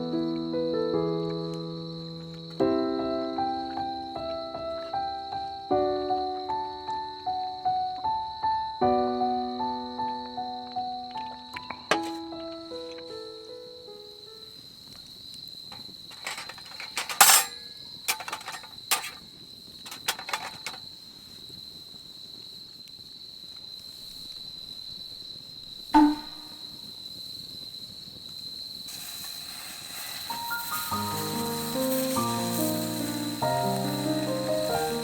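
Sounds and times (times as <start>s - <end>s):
night insects trilling: 0.0s - 35.0s
ringing clink: 16.2s - 19.0s.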